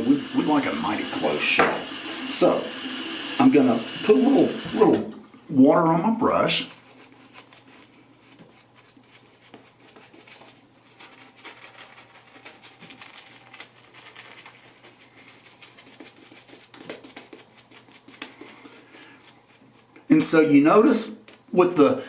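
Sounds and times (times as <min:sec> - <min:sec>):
shaving brush scratchy brushing: 0:00.4 - 0:02.6, 0:06.3 - 0:20.4.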